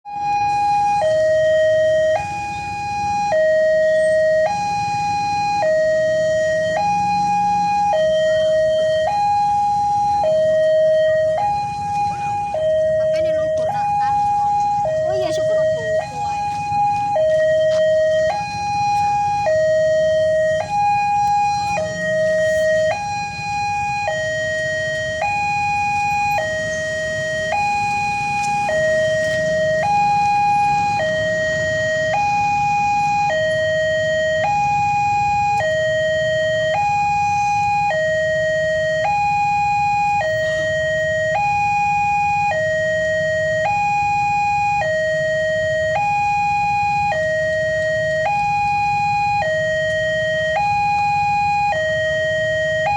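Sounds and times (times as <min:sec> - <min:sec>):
two-tone crossing siren: 0:00.0 - 0:52.9.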